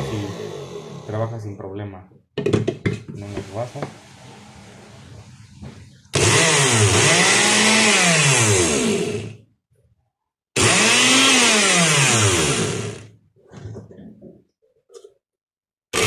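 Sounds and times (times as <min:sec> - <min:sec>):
blender motor spinning: 0:06.1 - 0:09.4, 0:10.6 - 0:13.1.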